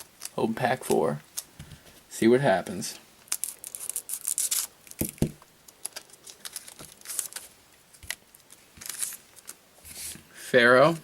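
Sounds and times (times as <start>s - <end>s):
foil wrapper tearing and crinkling: 3.2s - 5.1s, 5.8s - 9.6s.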